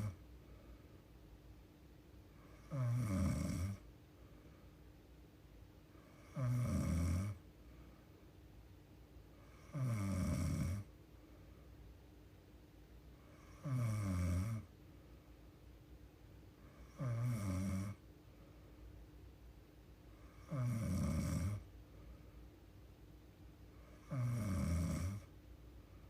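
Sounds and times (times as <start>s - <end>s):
woman snoring: 0.0s - 0.2s, 2.4s - 3.8s, 6.0s - 7.4s, 9.4s - 10.9s, 13.3s - 14.7s, 16.7s - 18.0s, 20.2s - 21.6s, 23.8s - 25.3s
faint steady hum: 0.0s - 26.0s.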